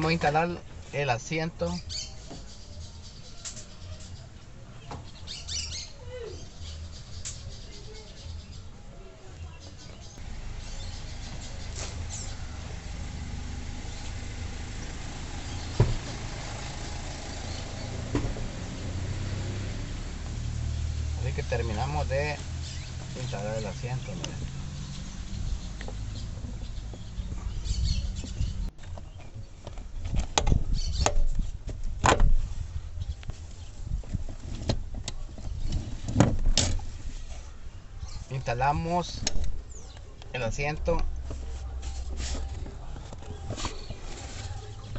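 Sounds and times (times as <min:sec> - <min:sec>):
engine idling: 0:10.2 - 0:28.7
car seat frame clunking: 0:15.7 - 0:16.2, 0:30.1 - 0:32.4.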